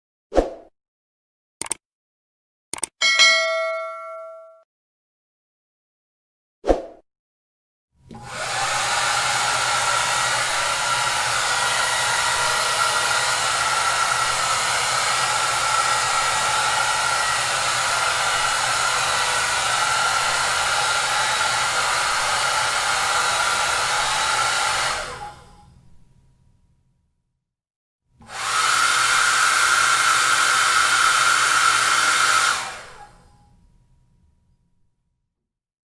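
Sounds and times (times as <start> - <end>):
hair dryer running: 8.1 - 25.5, 28.2 - 33.3.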